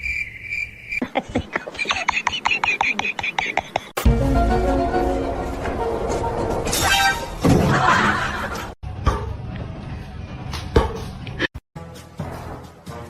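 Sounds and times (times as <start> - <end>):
music: 4.0 - 8.0, 8.8 - 13.0.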